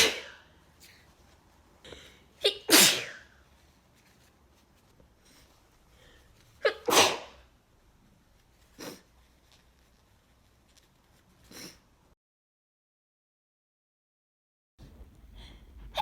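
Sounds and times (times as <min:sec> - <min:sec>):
person sneezing: 0:00.0 - 0:00.5, 0:01.9 - 0:03.4, 0:06.6 - 0:07.4.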